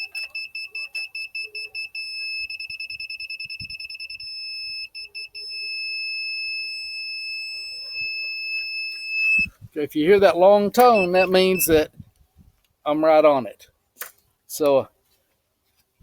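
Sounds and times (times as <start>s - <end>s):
laser level receiver beeping: 0.0s - 9.5s, 10.8s - 11.8s.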